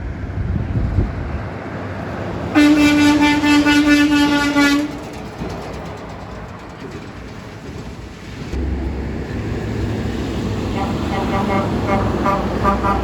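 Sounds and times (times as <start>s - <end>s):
engine and traffic rumble: 0.0s - 13.0s
truck horn blast: 2.5s - 4.9s, 10.6s - 13.0s.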